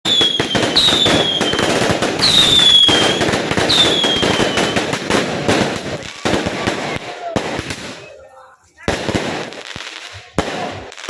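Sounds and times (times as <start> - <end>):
fireworks crackling and popping: 0.0 - 11.0
fireworks whistles: 0.1 - 8.2.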